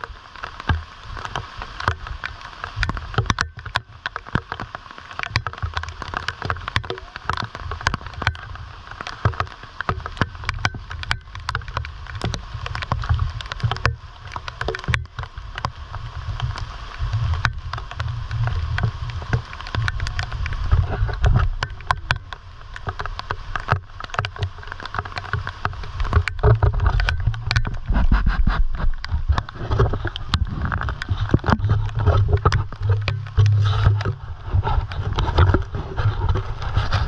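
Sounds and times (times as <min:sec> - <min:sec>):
river water rushing and splashing: 0:00.0 - 0:37.0
low rumble on microphone: 0:10.2 - 0:37.0.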